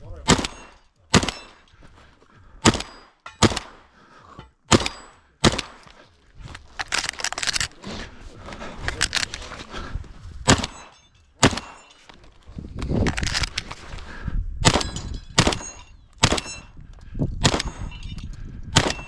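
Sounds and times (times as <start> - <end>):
shotgun shots: 0.2 - 1.6, 2.6 - 3.9, 4.7 - 5.9, 10.4 - 11.9, 14.6 - 16.6, 17.4 - 17.9, 18.8 - 19.0
sharp clicks and clatter: 12.0 - 13.8.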